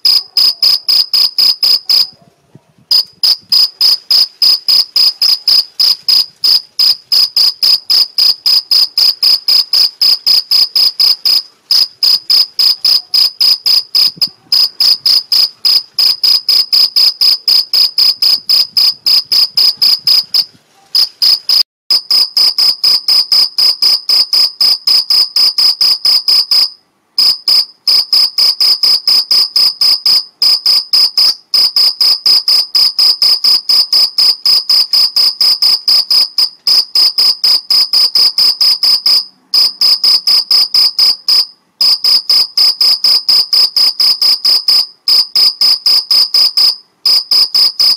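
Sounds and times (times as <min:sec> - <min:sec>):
field cricket chirping: 0:02.9 - 0:21.6.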